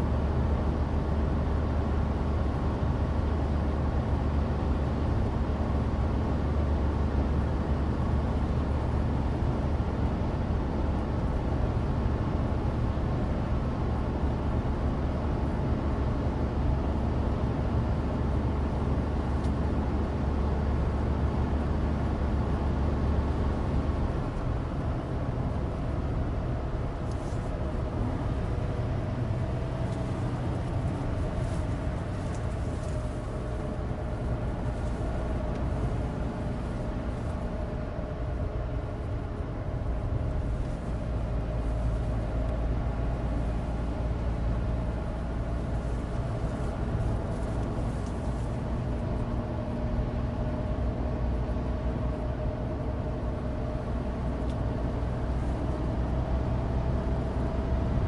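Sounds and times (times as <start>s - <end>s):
heater fan: 0.0s - 58.0s
tyre road noise: 0.0s - 58.0s
car engine running: 7.4s - 55.9s.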